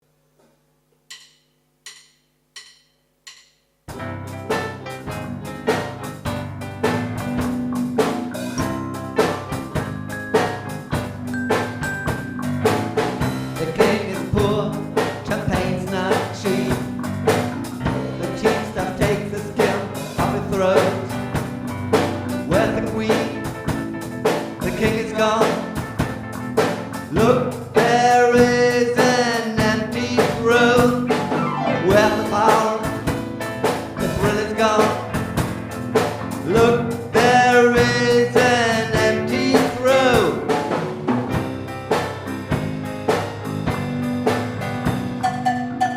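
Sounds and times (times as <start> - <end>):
drum beat: 1.1 - 45.2
fretless bass: 3.9 - 45.9
keyboards: 3.9 - 45.9
gliding lead melody: 31.2 - 33.4.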